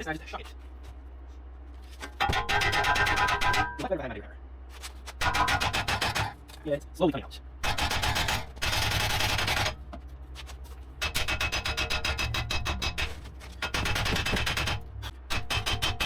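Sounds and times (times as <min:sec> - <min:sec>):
hammer striking steel: 0:02.2 - 0:03.9, 0:11.0 - 0:16.0.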